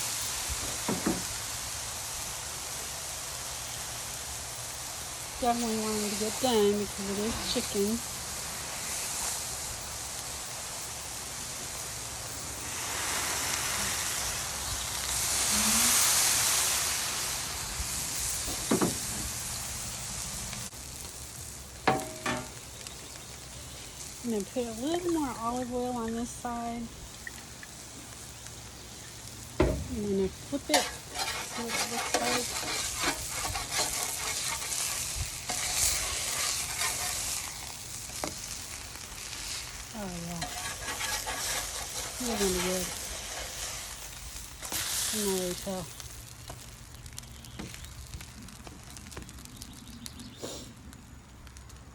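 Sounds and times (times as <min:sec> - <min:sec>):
tortillas sizzling in frying: 0:00.0 - 0:51.9.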